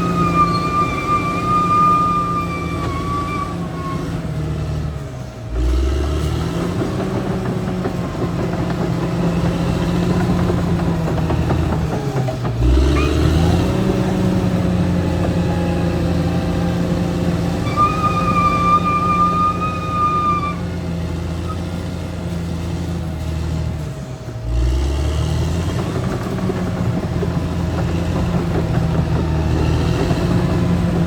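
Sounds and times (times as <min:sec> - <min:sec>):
bulldozer diesel engine running: 0:00.0 - 0:31.0.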